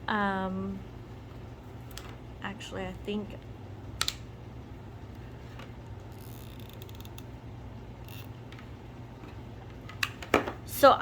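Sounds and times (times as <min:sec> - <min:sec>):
low steady hum: 0:00.0 - 0:11.0
glue gun creaking and clicking: 0:06.2 - 0:07.3.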